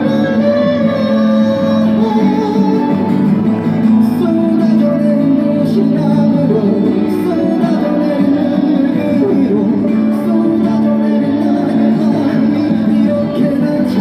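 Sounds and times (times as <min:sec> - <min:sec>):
acoustic guitar: 0:00.0 - 0:14.0
person singing: 0:00.0 - 0:14.0.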